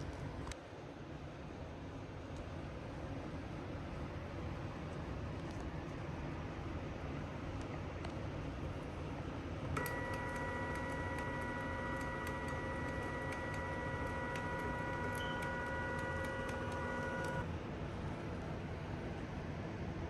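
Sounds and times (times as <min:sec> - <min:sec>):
tape feeding ticks: 0:09.8 - 0:17.4
label maker motor whine: 0:09.8 - 0:17.5.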